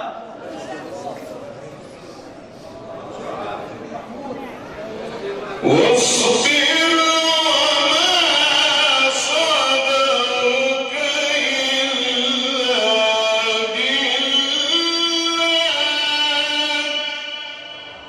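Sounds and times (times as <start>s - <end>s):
man chanting recitation: 5.6s - 18.0s.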